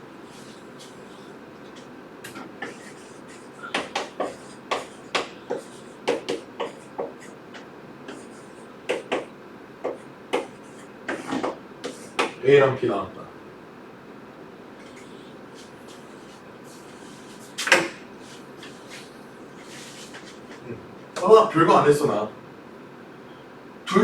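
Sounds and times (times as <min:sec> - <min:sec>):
pen tapping and scratching on paper: 0:01.6 - 0:12.4.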